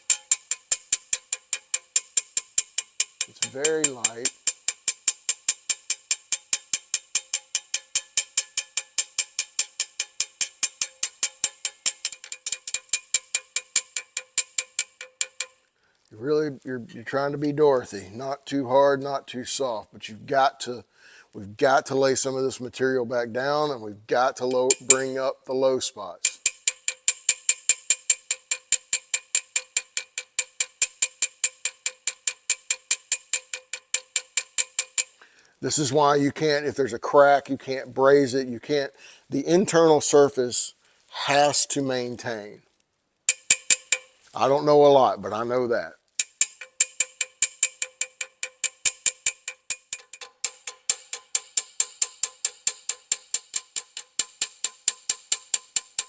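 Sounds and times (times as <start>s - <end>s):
light hammer taps on metal tube: 0.0s - 15.6s, 24.7s - 25.1s, 43.3s - 44.3s, 46.2s - 56.0s.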